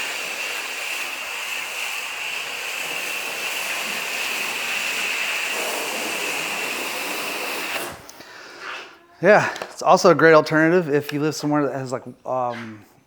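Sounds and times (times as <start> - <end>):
foam gun hissing spray: 0.0 - 8.1.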